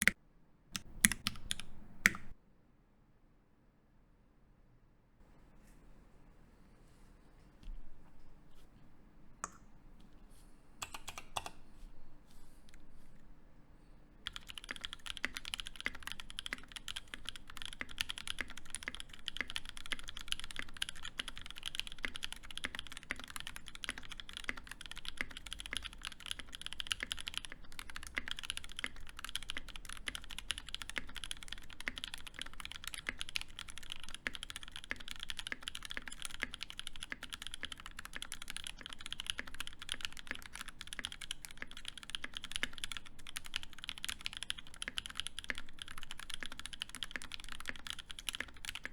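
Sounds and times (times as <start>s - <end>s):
fast mechanical keyboard typing: 0.8s - 2.4s, 10.8s - 11.5s, 14.3s - 48.9s.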